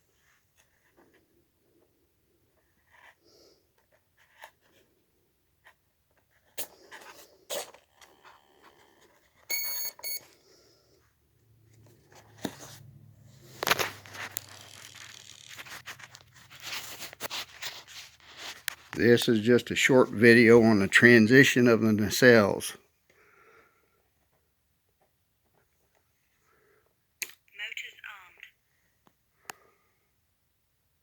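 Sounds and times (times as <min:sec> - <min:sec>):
short electronic beeps: 0:09.5 - 0:10.2
clicks and rustling of handling: 0:11.7 - 0:19.4.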